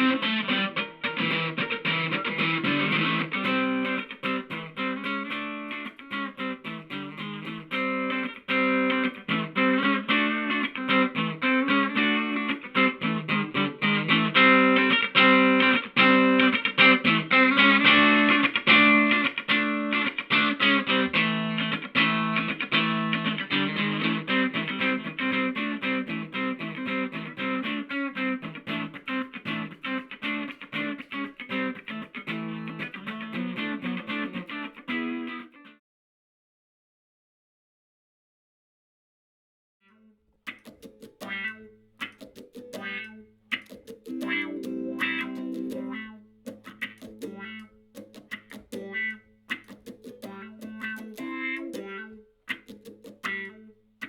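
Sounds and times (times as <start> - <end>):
electric guitar fast picked notes: 40.5 - 53.6.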